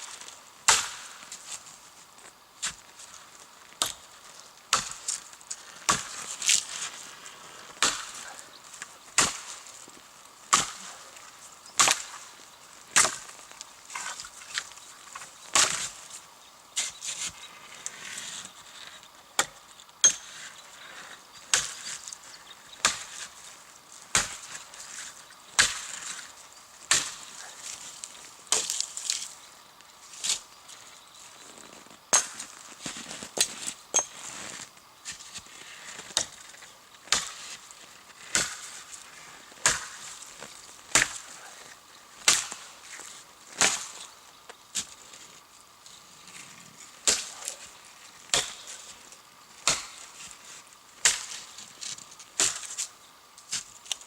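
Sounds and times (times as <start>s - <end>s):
axe chopping wood: 0.7s - 1.0s, 4.7s - 5.0s, 5.9s - 6.2s, 7.8s - 8.2s, 9.2s - 9.5s, 10.5s - 10.9s, 11.8s - 12.2s, 13.0s - 13.3s, 15.5s - 15.9s, 21.5s - 21.8s, 22.8s - 23.2s, 24.1s - 24.6s, 25.6s - 25.9s, 26.9s - 27.3s, 32.1s - 32.4s, 37.1s - 37.4s, 38.3s - 38.7s, 39.6s - 40.1s, 40.9s - 41.3s, 42.2s - 42.6s, 43.6s - 43.9s, 47.0s - 47.5s, 48.3s - 48.6s, 49.6s - 50.0s, 51.0s - 51.4s, 52.4s - 52.8s.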